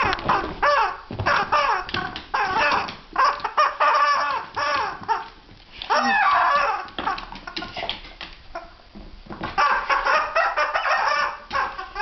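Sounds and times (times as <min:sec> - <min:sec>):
rubber duck toy squeaking: 0:00.0 - 0:05.3, 0:09.6 - 0:12.0.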